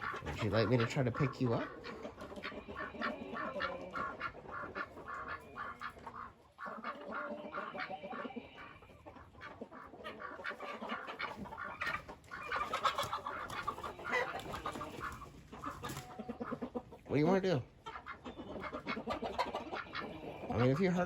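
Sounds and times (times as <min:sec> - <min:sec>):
chickens clucking: 0:00.0 - 0:21.0.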